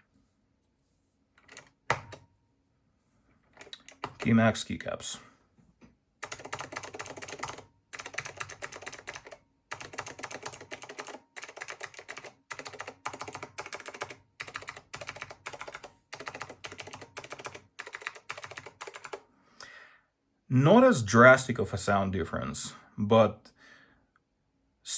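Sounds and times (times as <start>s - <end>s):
fast keyboard typing: 1.4s - 2.2s, 3.6s - 4.4s, 6.2s - 19.2s.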